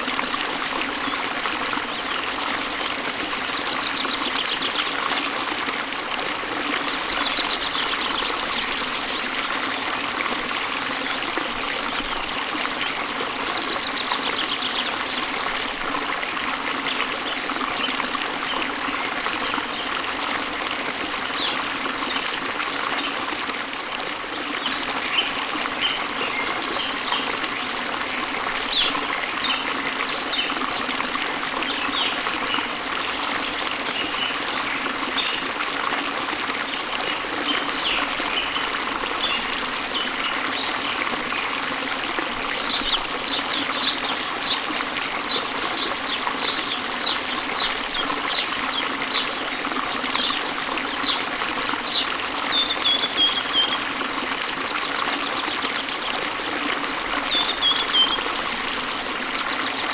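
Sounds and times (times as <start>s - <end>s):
stream rushing: 0.0s - 59.9s
small birds chirping: 57.2s - 58.3s.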